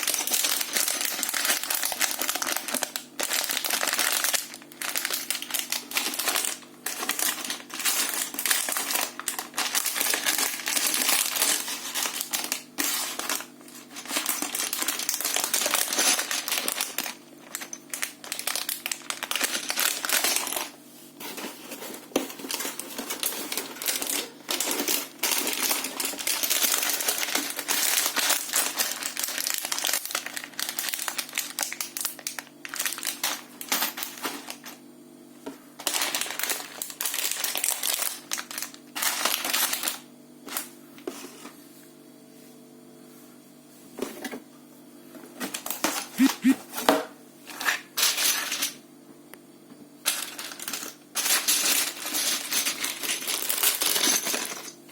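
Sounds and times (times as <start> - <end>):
plastic packaging crinkling: 0.0 - 34.7, 35.8 - 40.1, 50.1 - 54.4.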